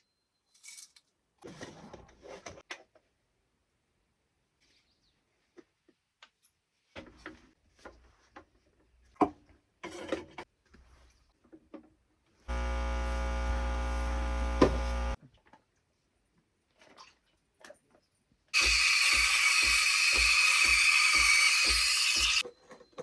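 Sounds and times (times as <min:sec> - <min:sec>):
small electric motor humming: 0:12.5 - 0:15.2, 0:18.6 - 0:22.4.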